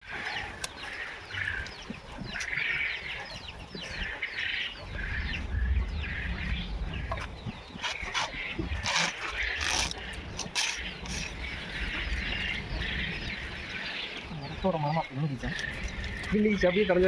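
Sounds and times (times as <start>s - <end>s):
many birds chirping: 0.0s - 17.0s
low rumble: 3.9s - 14.7s.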